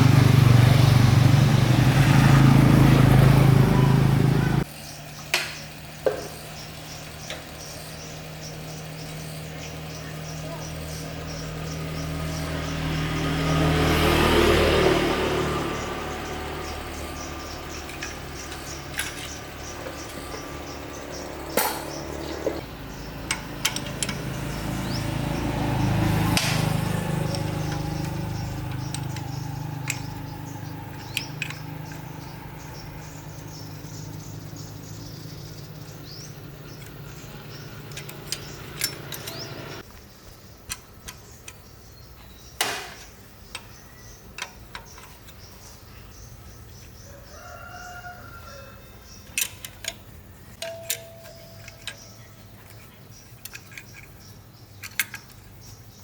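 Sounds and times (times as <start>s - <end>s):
metallic clinks and knocks: 21.5s - 22.6s, 23.2s - 24.5s, 36.7s - 39.8s, 49.3s - 55.6s.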